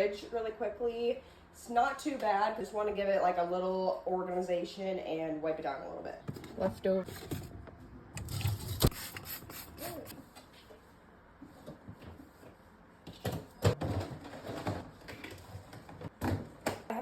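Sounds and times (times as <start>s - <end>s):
containers clattering and knocking: 13.2s - 16.9s.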